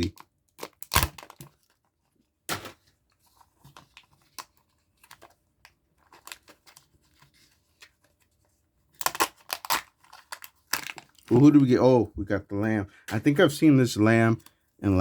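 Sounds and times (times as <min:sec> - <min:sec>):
foil wrapper rustling: 0:00.0 - 0:02.0, 0:08.9 - 0:12.0
light crinkles and clicks: 0:09.0 - 0:11.5.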